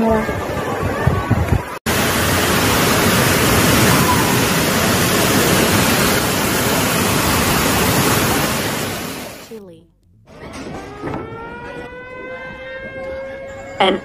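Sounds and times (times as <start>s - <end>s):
water rushing: 0.0s - 9.6s.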